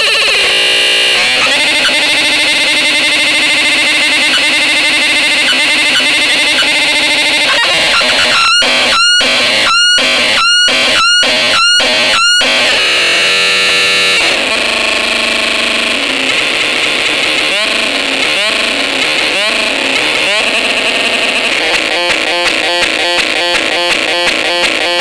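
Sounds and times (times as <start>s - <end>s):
distorted buzzing synth drone: 0.0s - 25.0s
rising synth chirps: 1.2s - 12.8s.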